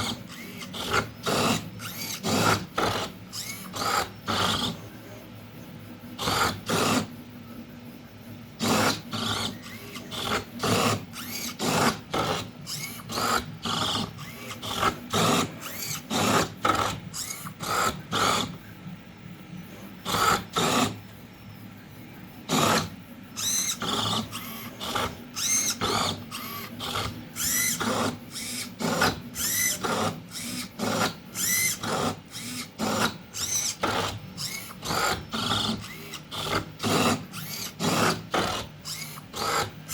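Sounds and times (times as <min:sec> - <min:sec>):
servo motors whirring: 0:00.0 - 0:05.2, 0:06.1 - 0:07.2, 0:08.5 - 0:18.8, 0:19.5 - 0:21.6, 0:22.2 - 0:39.9.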